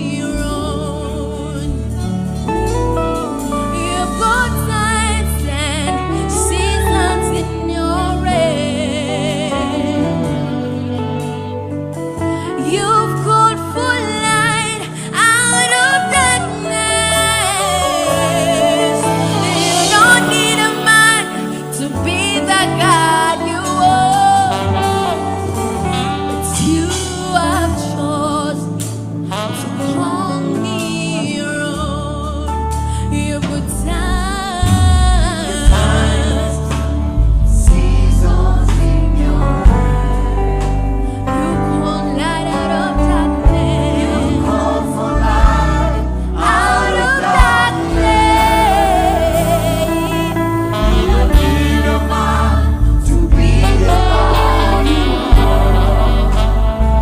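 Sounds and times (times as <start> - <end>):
steady bass line: 0.0 - 13.3, 33.6 - 57.0
gospel choir singing: 0.0 - 32.2, 33.9 - 57.0
band accompaniment: 0.0 - 57.0
sung melody with wavering notes: 0.0 - 57.0.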